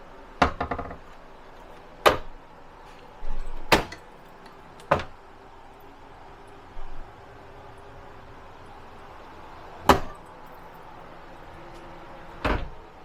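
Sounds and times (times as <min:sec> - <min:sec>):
cabinet doors knocking shut: 0:00.4 - 0:01.1, 0:02.0 - 0:02.3, 0:04.9 - 0:05.1, 0:09.9 - 0:10.1, 0:12.4 - 0:12.8.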